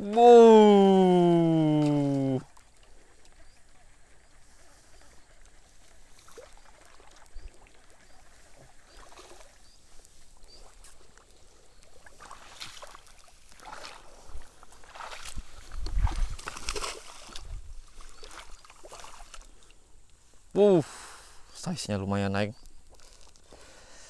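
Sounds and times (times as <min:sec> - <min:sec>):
water sloshing and splashing: 0:01.6 - 0:19.8.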